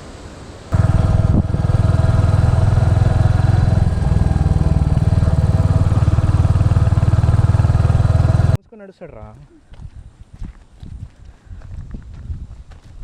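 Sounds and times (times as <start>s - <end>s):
motorcycle engine running: 0.7s - 8.6s.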